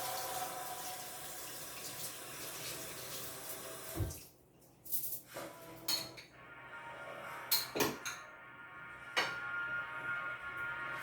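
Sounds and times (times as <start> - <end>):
running water: 0.0 - 4.4.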